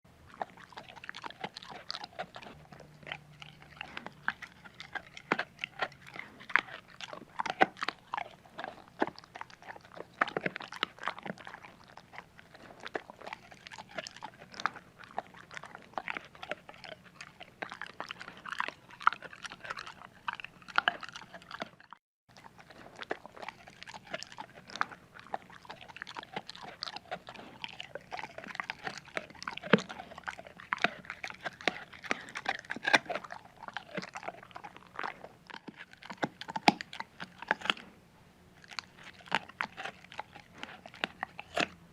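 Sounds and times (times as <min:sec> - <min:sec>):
dog crunching food: 0:00.1 - 0:38.0, 0:38.6 - 0:41.8.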